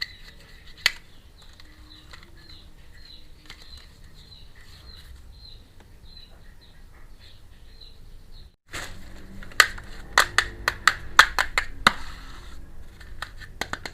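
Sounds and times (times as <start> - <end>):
plastic toy pieces rustling: 0.0 - 5.2.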